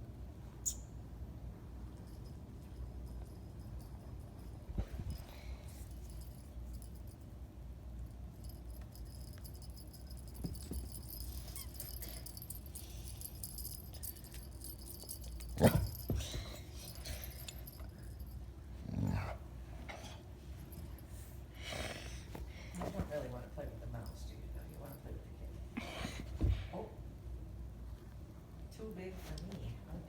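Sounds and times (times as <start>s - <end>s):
metallic jingling and rattling: 8.1s - 18.5s.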